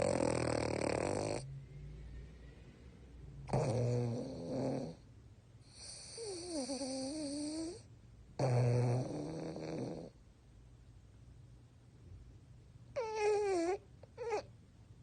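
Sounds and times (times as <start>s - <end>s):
dog whining: 0.0s - 1.4s, 12.9s - 14.6s
dog snoring: 0.0s - 1.6s, 3.4s - 10.2s, 12.9s - 14.5s.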